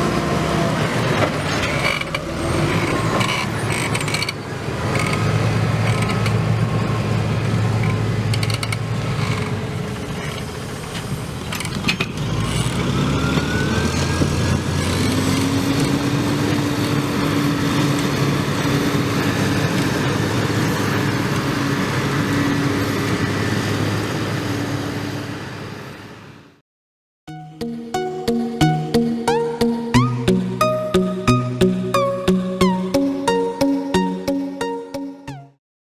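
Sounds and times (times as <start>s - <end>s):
engine knocks: 0.0s - 25.7s
tractor diesel engine running: 0.0s - 26.6s
whine rising in pitch: 12.8s - 24.5s.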